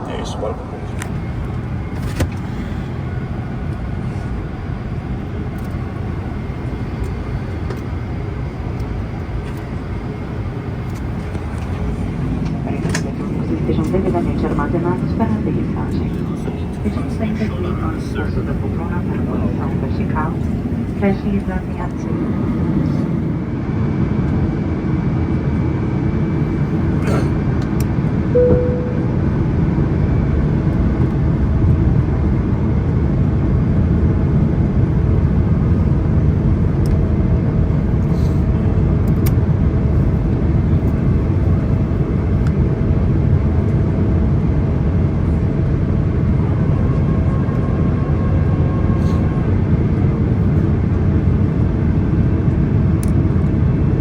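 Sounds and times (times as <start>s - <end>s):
airliner cabin airflow and engine noise: 0.0s - 54.0s
brief tone: 28.3s - 29.4s.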